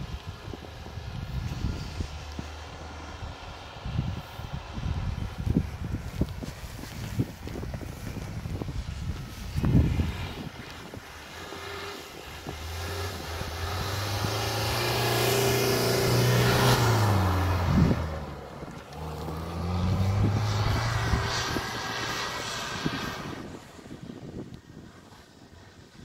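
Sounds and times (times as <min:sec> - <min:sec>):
vehicle engine revving: 0:08.0 - 0:23.9.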